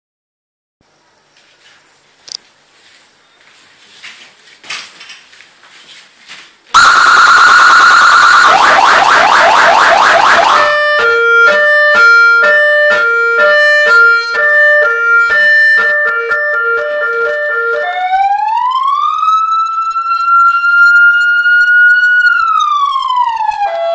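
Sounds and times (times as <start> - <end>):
electronic police siren: 6.7 - 23.9.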